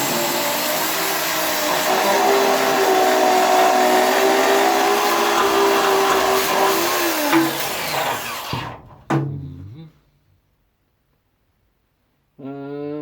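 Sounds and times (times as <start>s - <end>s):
electric grinder on sheet steel: 0.0s - 8.9s.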